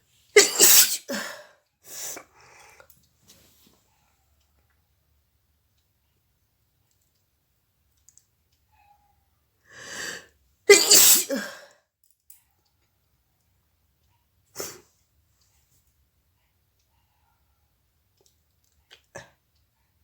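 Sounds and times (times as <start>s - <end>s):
woman sneezing: 0.4s - 1.4s, 10.7s - 11.7s.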